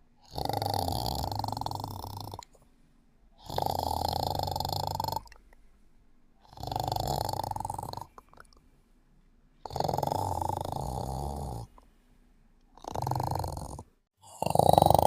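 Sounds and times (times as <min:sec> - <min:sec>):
person snoring: 0:00.2 - 0:02.6, 0:03.4 - 0:05.4, 0:06.4 - 0:08.4, 0:09.6 - 0:11.7, 0:12.8 - 0:15.0.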